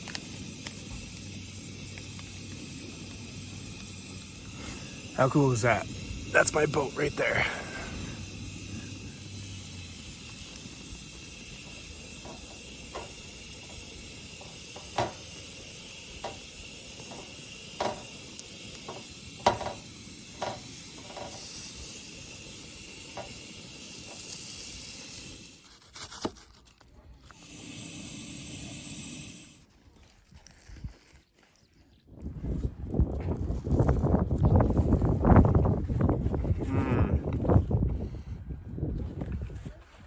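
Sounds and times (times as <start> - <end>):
steady hiss: 0.0 - 25.7, 27.3 - 29.6.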